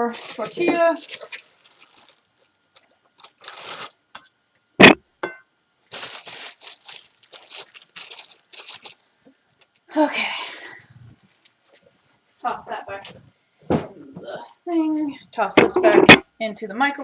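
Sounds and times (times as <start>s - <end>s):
crinkling tortilla packaging: 0.0s - 4.2s, 5.8s - 9.9s.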